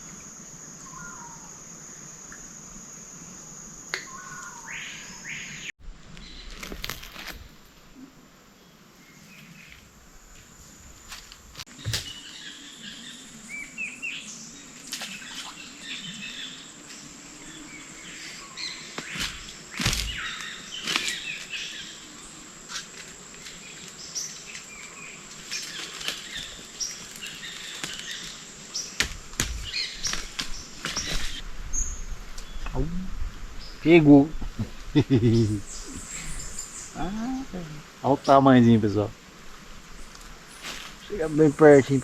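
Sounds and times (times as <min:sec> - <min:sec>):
small birds chirping: 0:23.4 - 0:33.0, 0:33.6 - 0:38.6, 0:39.9 - 0:42.0.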